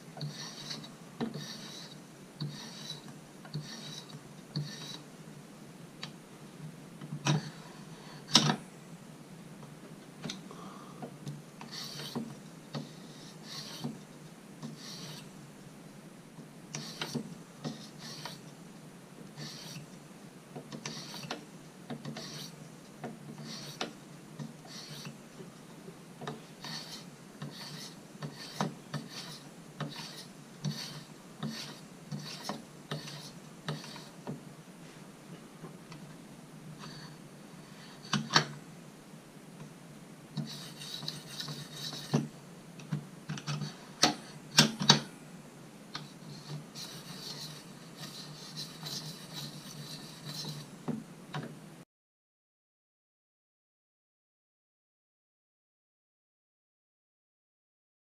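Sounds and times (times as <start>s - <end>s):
sharpening stone rasping on knife edge: 0.2s - 3.0s, 3.6s - 5.0s, 26.7s - 34.1s.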